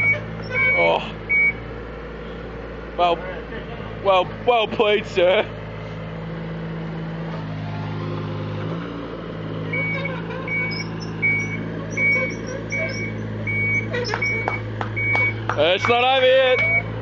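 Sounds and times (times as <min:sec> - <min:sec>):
travel alarm beeping: 0:00.0 - 0:01.6, 0:09.7 - 0:15.4, 0:16.6 - 0:16.9
diesel engine running: 0:00.0 - 0:17.0.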